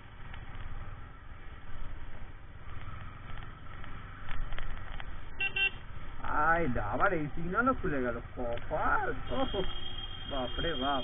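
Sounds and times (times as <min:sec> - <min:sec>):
motorcycle engine rumble: 0:00.0 - 0:11.0
vehicle horn toot: 0:05.4 - 0:05.8, 0:09.2 - 0:11.0.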